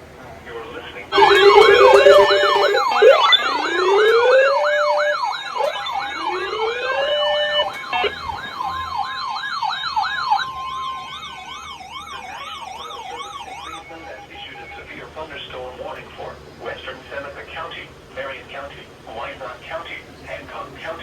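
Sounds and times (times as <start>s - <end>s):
sirens wailing: 1.1s - 15.2s.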